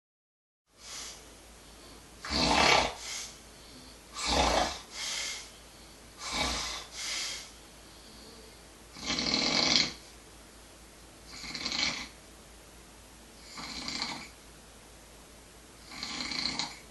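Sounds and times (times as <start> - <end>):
person snoring: 2.2 - 3.4, 4.1 - 5.5, 6.2 - 7.5, 8.1 - 10.0, 11.3 - 12.2, 13.4 - 14.3, 15.8 - 16.8.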